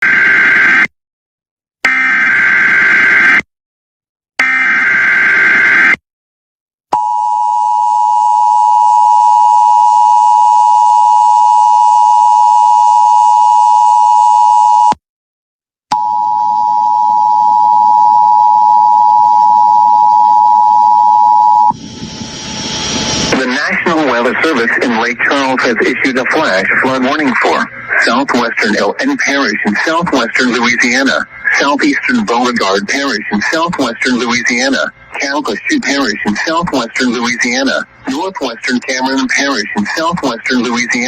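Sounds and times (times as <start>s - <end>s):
data-burst screech: 21.7s - 25.5s.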